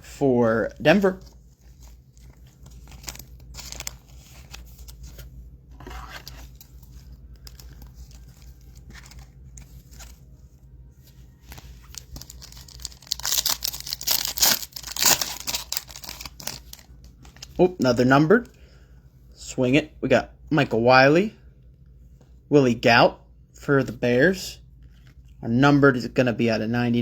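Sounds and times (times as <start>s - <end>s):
rustling of wrapper and cards: 0.6s - 17.6s
wrapper being torn open: 2.1s - 5.0s, 11.5s - 17.5s.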